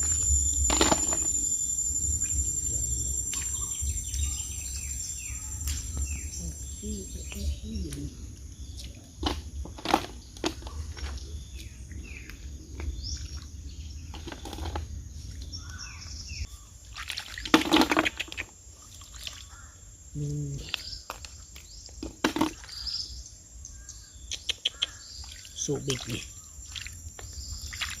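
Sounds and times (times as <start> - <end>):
birds chirping: 0.0 - 16.8, 19.4 - 28.0
splashes: 16.8 - 19.6, 25.1 - 28.0.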